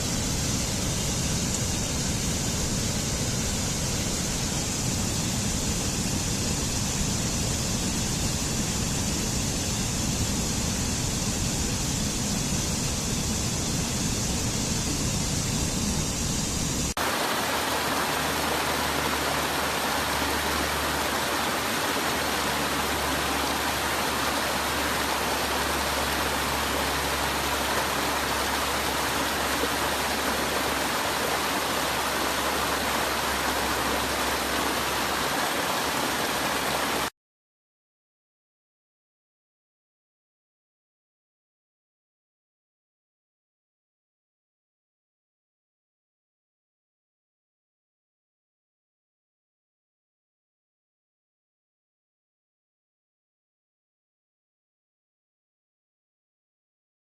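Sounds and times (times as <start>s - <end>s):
waterfall rushing: 15.0s - 37.1s.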